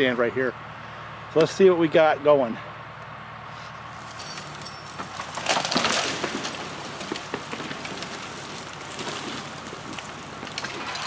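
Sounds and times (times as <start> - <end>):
tractor engine running low: 2.7 - 11.0
tree dragged through brush: 3.5 - 11.0
branches crackling and snapping: 3.9 - 11.0.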